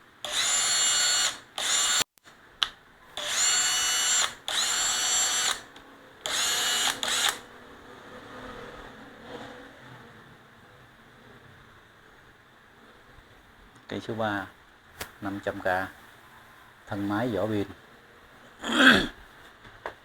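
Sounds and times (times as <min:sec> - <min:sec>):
cordless drill motor whining: 0:00.2 - 0:02.1, 0:03.2 - 0:07.5.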